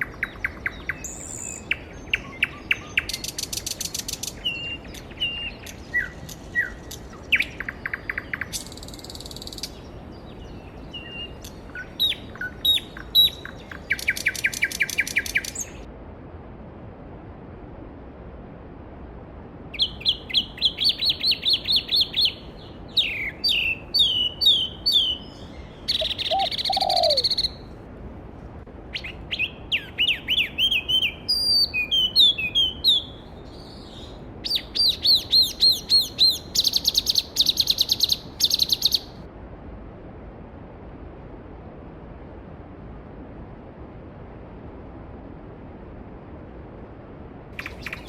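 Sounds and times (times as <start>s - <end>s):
songbird singing whistled notes: 0.0s - 15.8s, 19.8s - 27.7s, 28.9s - 39.2s, 47.6s - 48.0s.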